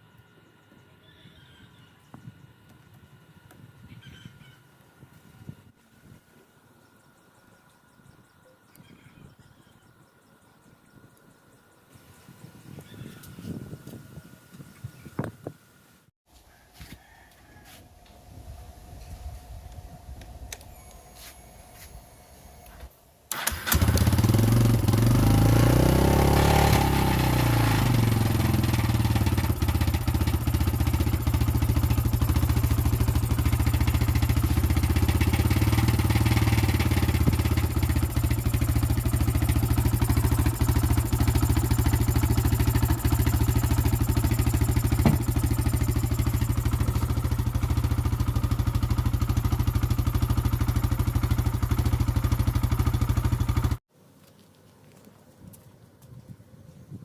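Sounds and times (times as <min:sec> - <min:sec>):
motorcycle engine starting and idling: 0:19.0 - 0:53.8.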